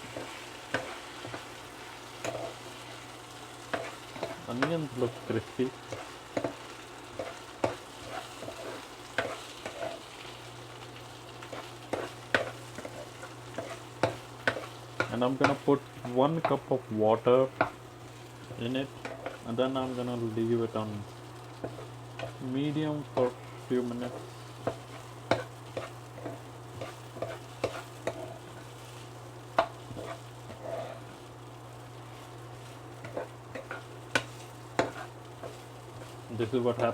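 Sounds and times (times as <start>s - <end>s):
rice sizzling in oil: 0.0s - 36.9s
steady low hum: 0.0s - 36.9s
spoon stirring in pot: 0.1s - 16.6s, 18.4s - 20.0s, 21.5s - 23.4s, 24.0s - 31.2s, 32.2s - 36.9s
utensil scraping a pot: 18.9s - 19.5s, 24.0s - 28.7s, 29.6s - 31.1s, 33.0s - 36.9s.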